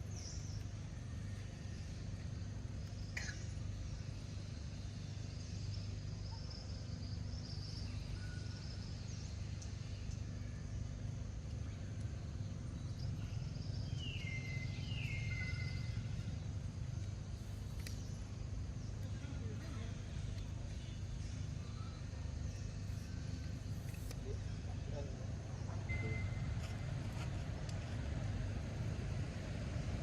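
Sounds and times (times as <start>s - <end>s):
low outdoor rumble: 0.0s - 30.0s
faint high chirps: 25.6s - 26.6s.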